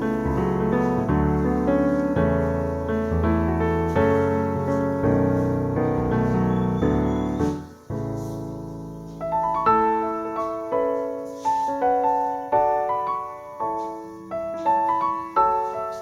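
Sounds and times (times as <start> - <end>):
piano music: 0.0 - 16.0.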